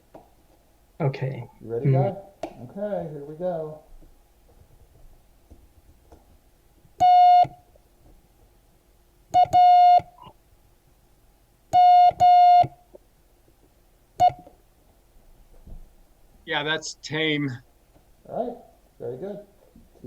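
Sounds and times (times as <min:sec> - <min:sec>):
morse code tone: 0:07.0 - 0:07.6, 0:09.4 - 0:10.3, 0:11.8 - 0:12.8.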